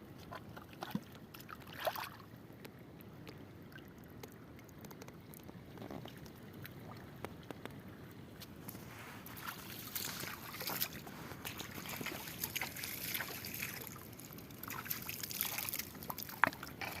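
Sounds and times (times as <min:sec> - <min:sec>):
river water splashing: 0:00.2 - 0:02.4, 0:06.0 - 0:17.0
small clicks and knocks: 0:04.1 - 0:06.4.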